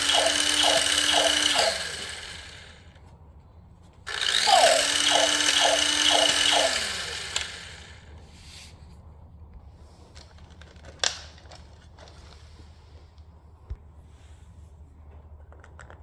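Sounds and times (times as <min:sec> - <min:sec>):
toy robot motor whining: 0:00.0 - 0:02.8, 0:04.1 - 0:08.1.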